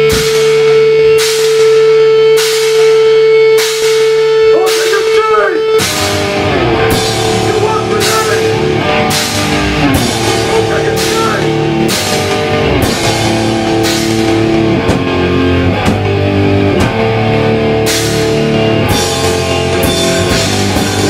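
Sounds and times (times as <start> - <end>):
crash cymbal hits: 0.0 - 5.0, 5.8 - 14.7
distorted guitars: 0.0 - 21.0
drums: 0.0 - 21.0.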